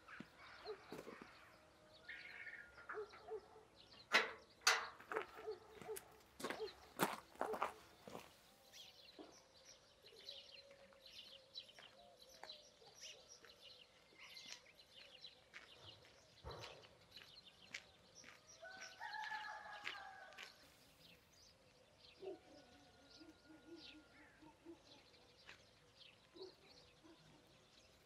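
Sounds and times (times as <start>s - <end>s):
birds chirping: 0.0s - 28.0s
distant rooster crowing: 18.6s - 20.6s.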